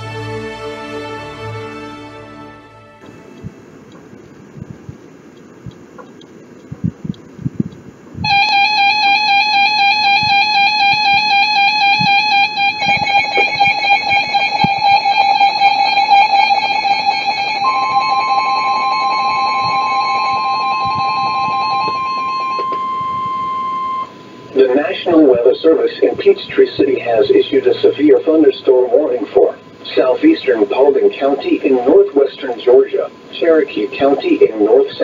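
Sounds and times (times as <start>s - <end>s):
overlapping alarm tones: 8.2s - 35.0s
steady single tone: 8.2s - 35.0s
warbling alarm tone: 8.2s - 35.0s.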